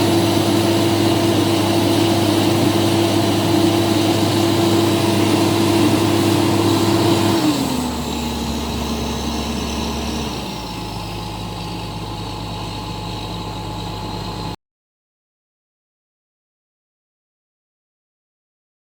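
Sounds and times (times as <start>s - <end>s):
excavator diesel engine running: 0.0s - 14.6s.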